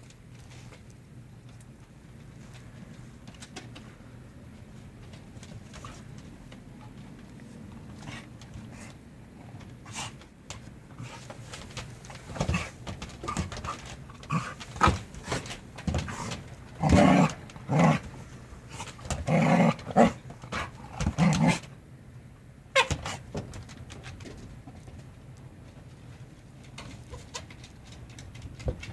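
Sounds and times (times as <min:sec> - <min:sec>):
dogs scuffling: 0:01.5 - 0:21.7
dogs growling and snarling: 0:07.8 - 0:10.2, 0:12.3 - 0:21.7.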